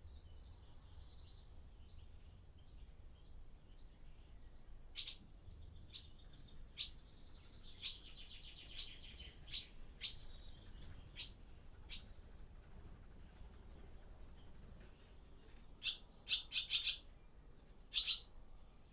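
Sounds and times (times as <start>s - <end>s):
swallows chirping: 17.9s - 18.3s.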